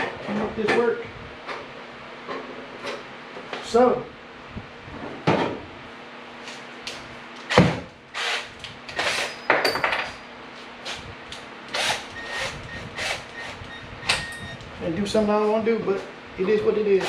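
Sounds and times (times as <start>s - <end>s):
knocks clunks and scrapes of tools: 1.5s - 3.0s.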